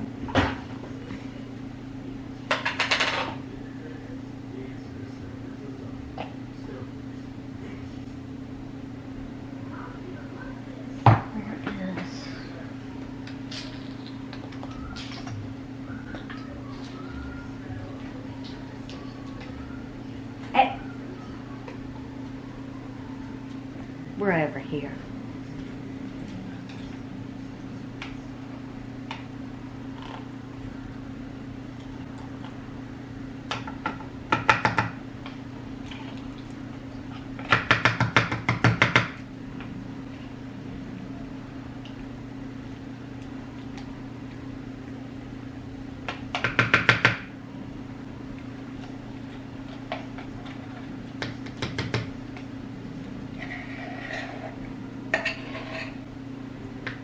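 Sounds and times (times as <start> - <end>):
kitchen appliance hum: 0.0 - 57.0
utensils clattering and scraping: 53.4 - 56.1.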